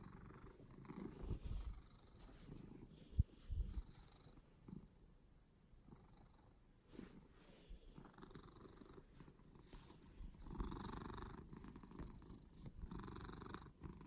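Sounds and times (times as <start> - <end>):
cat purring: 0.0 - 14.0.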